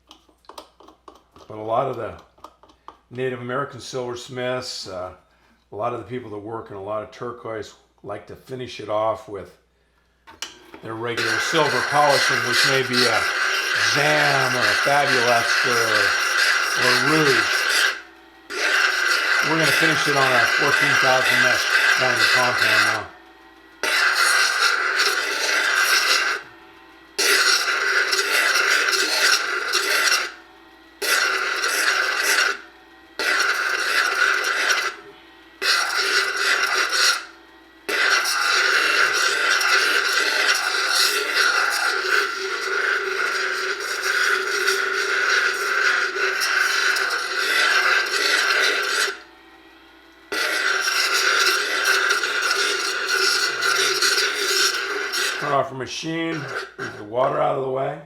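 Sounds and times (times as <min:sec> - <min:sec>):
stone scraping on polishing pad: 0:11.0 - 0:23.2, 0:23.8 - 0:26.5, 0:27.2 - 0:30.4, 0:31.0 - 0:32.6, 0:33.2 - 0:37.3, 0:37.9 - 0:49.2, 0:50.3 - 0:55.6, 0:56.3 - 0:57.1.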